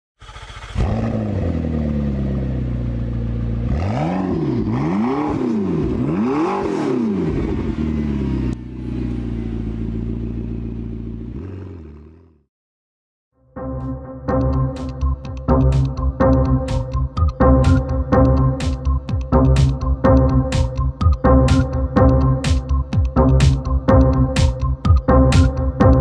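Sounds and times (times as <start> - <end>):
car engine idling and revving: 0.2 - 12.5.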